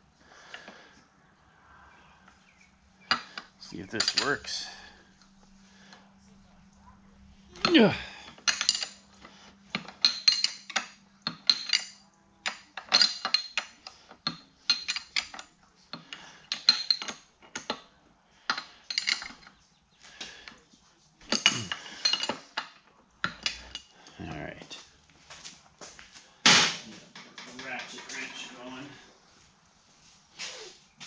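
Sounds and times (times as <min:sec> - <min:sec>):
metal tools clinking: 0:03.0 - 0:05.0, 0:07.5 - 0:19.6, 0:21.2 - 0:24.8.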